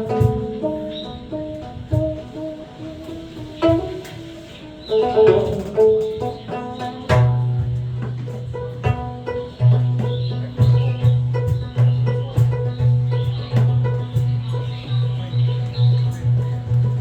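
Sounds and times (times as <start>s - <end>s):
instrumental music: 0.0s - 17.0s
low bass note: 7.1s - 17.0s.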